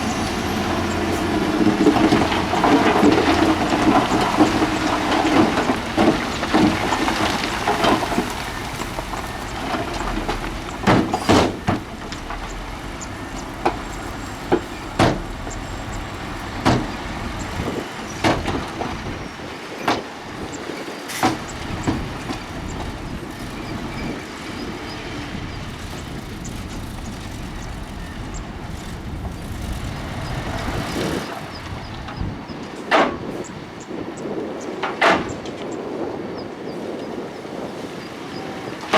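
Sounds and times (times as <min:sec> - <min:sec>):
heavy machinery engine running: 0:00.0 - 0:38.9
clanks of metal and rock: 0:00.1 - 0:20.2.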